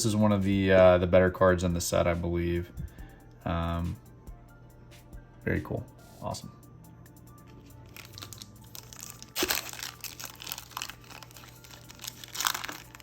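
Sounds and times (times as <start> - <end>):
wrapper crinkling: 7.8 - 13.0
wrapper tearing open: 7.8 - 13.0.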